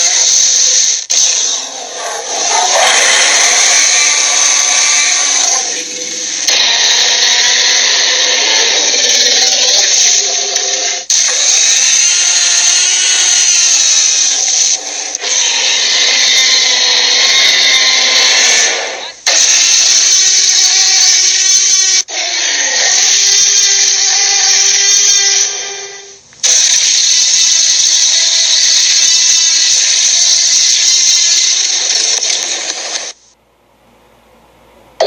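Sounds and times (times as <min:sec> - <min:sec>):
long harsh rasping roars: 0:01.4 - 0:09.4.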